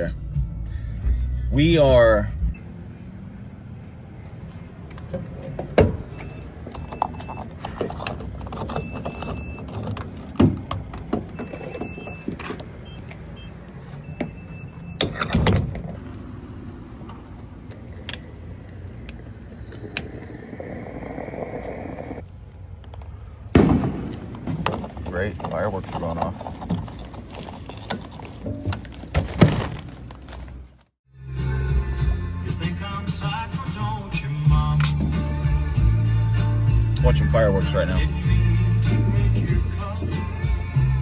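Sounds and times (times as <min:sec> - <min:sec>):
vehicle rumble: 0:00.0 - 0:41.0
fireworks bangs: 0:23.5 - 0:24.6.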